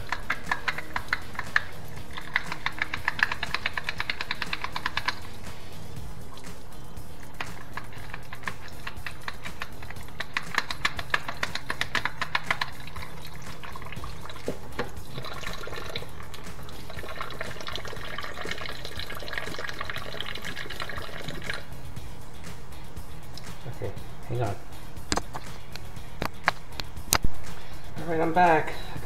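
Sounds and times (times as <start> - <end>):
tap water running: 0.0 - 5.5, 7.2 - 21.7
faint music: 0.0 - 29.0.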